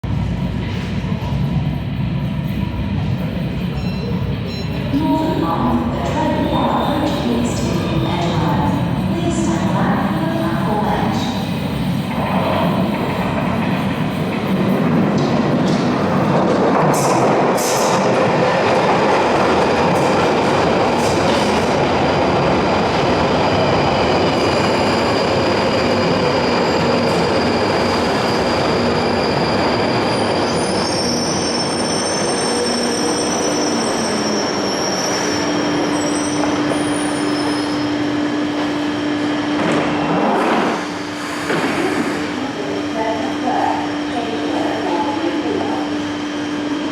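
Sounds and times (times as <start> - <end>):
train wheels rumbling on rail: 0.0 - 46.9
high-pitched wheel squeal: 27.9 - 38.0.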